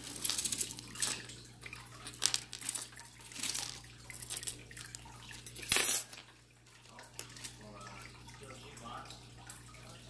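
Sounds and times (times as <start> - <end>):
jewelry clinking and rustling: 0.0 - 6.4.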